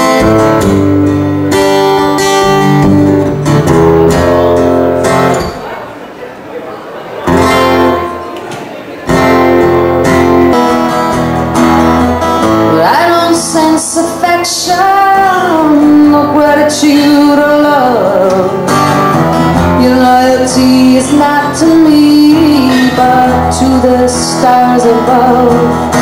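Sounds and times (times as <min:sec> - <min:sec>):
acoustic guitar strumming chords: 0:00.0 - 0:05.9, 0:07.2 - 0:26.0
woman singing: 0:12.6 - 0:18.6, 0:19.6 - 0:26.0.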